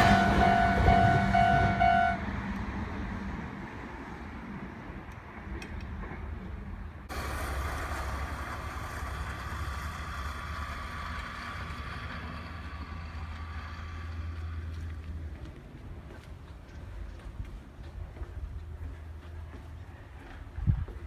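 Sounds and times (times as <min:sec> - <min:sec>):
high whine: 0:00.0 - 0:02.3
electric train rumble: 0:00.0 - 0:21.0.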